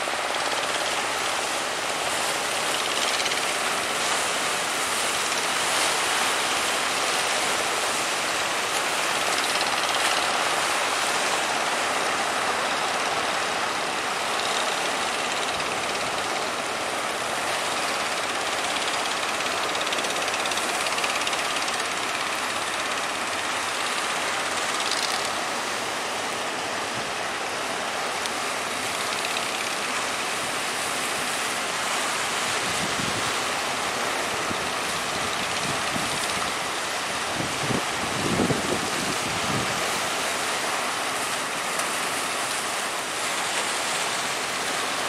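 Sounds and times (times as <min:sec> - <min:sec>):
sea: 0:00.0 - 0:45.0
strong wind: 0:32.4 - 0:40.2
wind buffeting microphone: 0:34.4 - 0:39.9.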